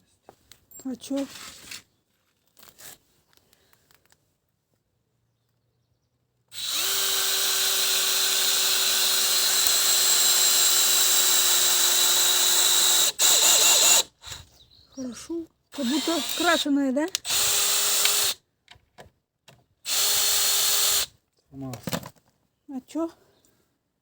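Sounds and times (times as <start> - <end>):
electric drill whining: 6.5 - 14.4, 15.7 - 18.4, 19.8 - 21.1.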